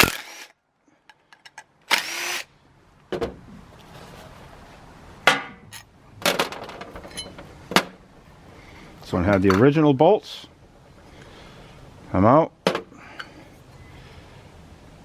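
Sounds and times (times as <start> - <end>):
cordless impact driver: 0.0 - 0.5, 1.9 - 2.5.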